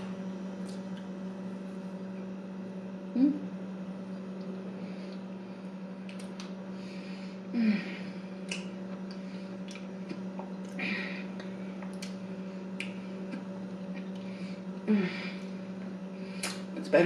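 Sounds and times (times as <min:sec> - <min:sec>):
steady low hum: 0:00.0 - 0:17.0
wet chewing and mouth smacks: 0:06.0 - 0:06.5, 0:08.4 - 0:10.8, 0:11.4 - 0:12.2.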